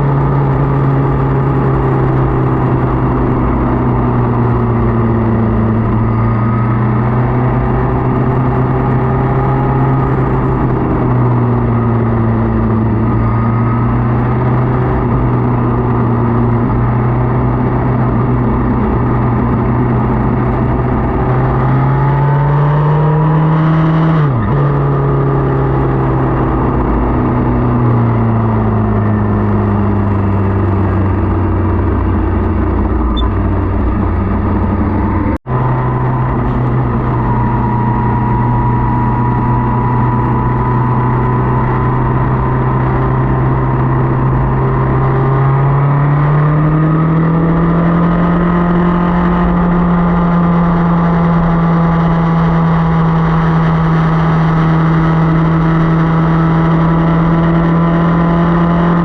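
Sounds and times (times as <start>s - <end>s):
motorcycle engine running: 0.0s - 59.0s
steady rush of road noise: 0.0s - 59.0s.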